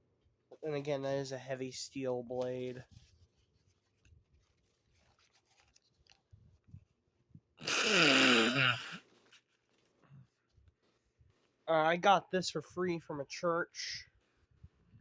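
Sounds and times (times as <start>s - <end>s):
man's rough throat sound: 7.6s - 9.0s.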